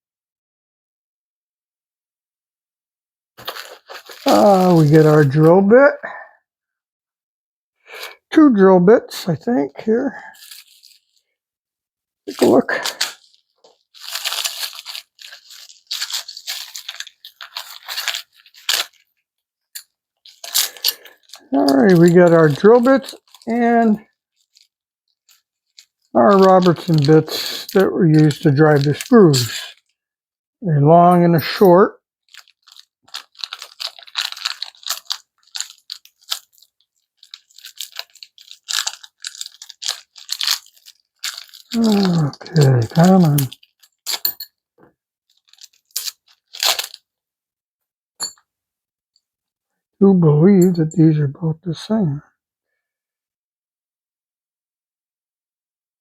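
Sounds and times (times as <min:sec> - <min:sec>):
packaging crinkling: 0:03.4 - 0:05.5, 0:10.4 - 0:11.2, 0:12.3 - 0:19.2, 0:19.8 - 0:29.8, 0:32.3 - 0:44.2, 0:45.3 - 0:47.0.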